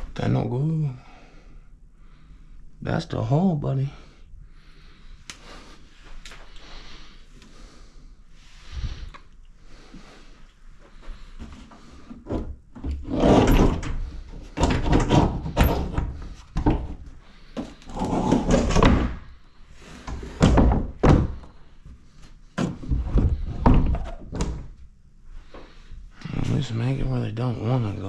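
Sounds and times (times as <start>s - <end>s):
loud knocks and thuds: 20.4s - 21.4s, 22.6s - 24.6s.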